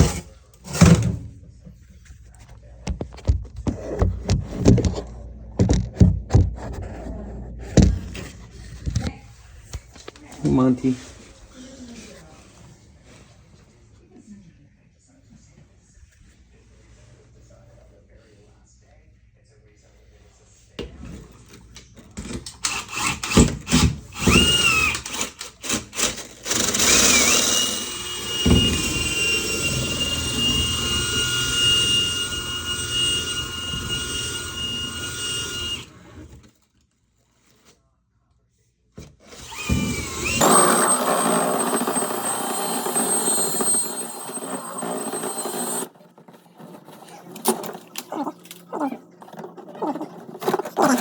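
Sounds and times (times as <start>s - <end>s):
power tool motor whining: 26.5s - 36.4s, 39.3s - 45.9s.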